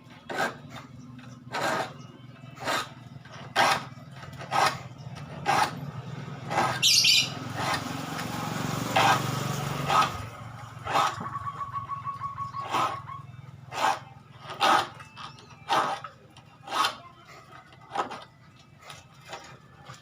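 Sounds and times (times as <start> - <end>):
file rasping on saw teeth: 1.5 - 2.0, 2.6 - 5.8, 6.5 - 7.8, 13.7 - 17.1
high-pitched squeak: 6.6 - 7.4.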